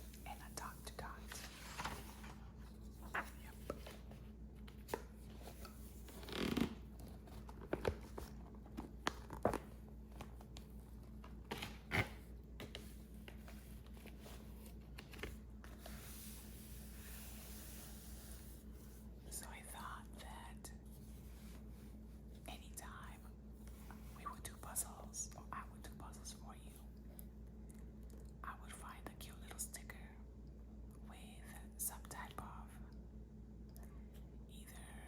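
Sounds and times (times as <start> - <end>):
paper rustling: 1.0 - 6.3.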